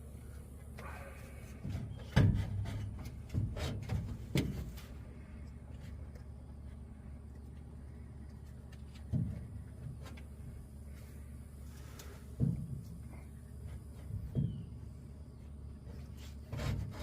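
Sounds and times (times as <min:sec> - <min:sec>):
sharp clunks and knocks: 0:01.6 - 0:05.0, 0:08.9 - 0:10.3, 0:12.3 - 0:14.8.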